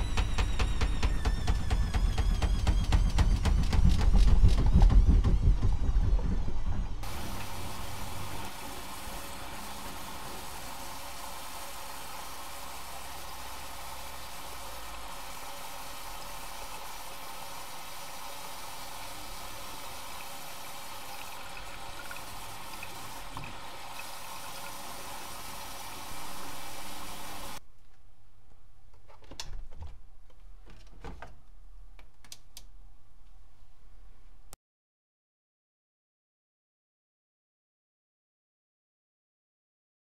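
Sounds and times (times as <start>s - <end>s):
water rushing into washing machine: 0.0s - 27.6s.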